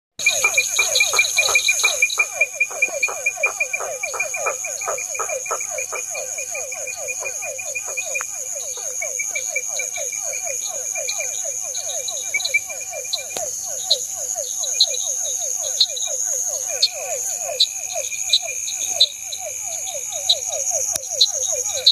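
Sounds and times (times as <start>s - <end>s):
crickets chirping: 0.2s - 21.9s
frog notes: 0.2s - 21.9s
high insect trill: 0.2s - 21.9s.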